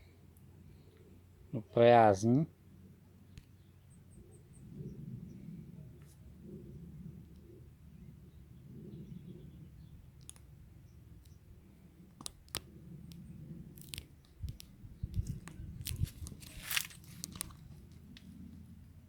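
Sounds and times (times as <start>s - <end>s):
crunching and snapping leaves: 12.1s - 18.6s
short rustle: 15.2s - 18.2s.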